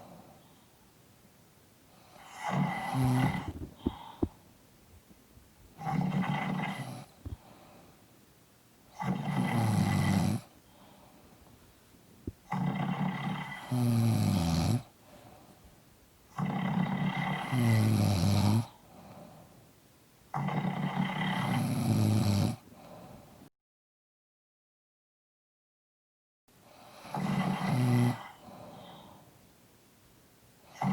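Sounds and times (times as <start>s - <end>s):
quiet breathing: 0.0s - 1.0s, 1.8s - 23.5s, 26.5s - 29.5s
people snoring: 2.0s - 4.4s, 5.8s - 7.5s, 8.9s - 10.5s, 12.4s - 14.9s, 16.3s - 18.8s, 20.4s - 23.0s, 26.9s - 29.0s.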